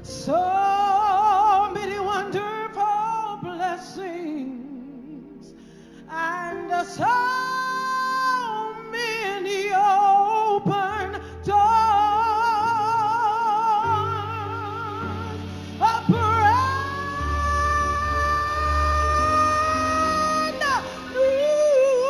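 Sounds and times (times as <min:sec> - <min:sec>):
low accompaniment chords: 0:11.5 - 0:22.0
woman singing long notes: 0:13.6 - 0:22.0.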